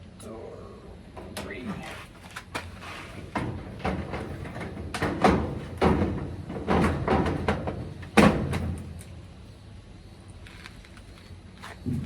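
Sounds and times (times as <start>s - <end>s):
metal panels knocking and clanking: 1.2s - 2.0s, 2.6s - 9.2s.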